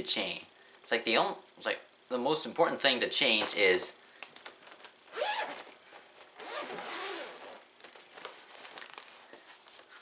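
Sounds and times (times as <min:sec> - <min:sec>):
zipper being pulled open: 0:05.1 - 0:05.8, 0:06.4 - 0:07.7.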